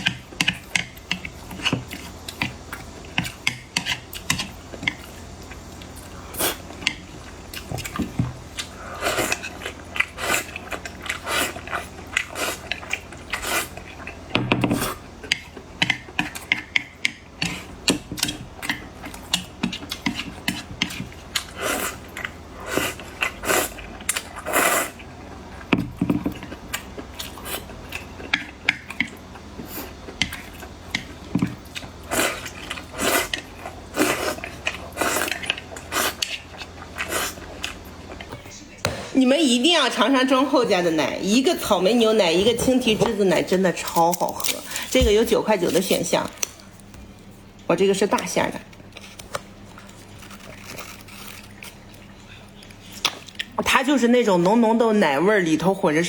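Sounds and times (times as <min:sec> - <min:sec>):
heavier thuds: 0:38.9 - 0:39.6
chewing and biting: 0:48.8 - 0:53.6.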